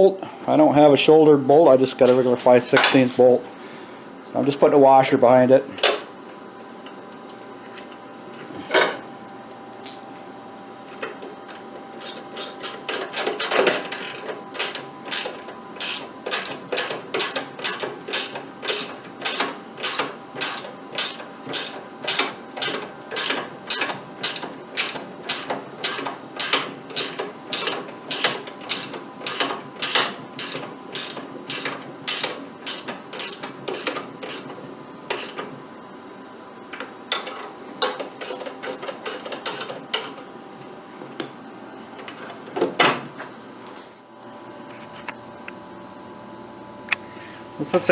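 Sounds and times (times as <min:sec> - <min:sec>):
hand ratchet clicking: 0:09.8 - 0:10.1, 0:11.5 - 0:34.5, 0:35.1 - 0:35.4, 0:38.2 - 0:40.2.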